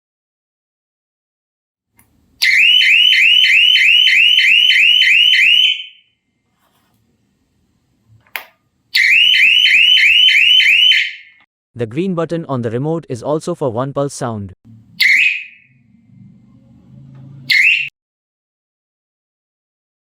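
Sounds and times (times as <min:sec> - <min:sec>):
electronic alarm siren whooping: 0:02.4 - 0:06.1, 0:09.0 - 0:11.4, 0:14.9 - 0:16.7, 0:17.4 - 0:17.9
click: 0:08.2 - 0:08.6.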